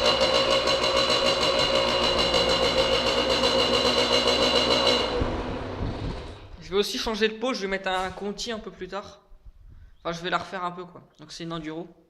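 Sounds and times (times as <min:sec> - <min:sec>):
two-stroke engine idling: 0:00.0 - 0:06.6.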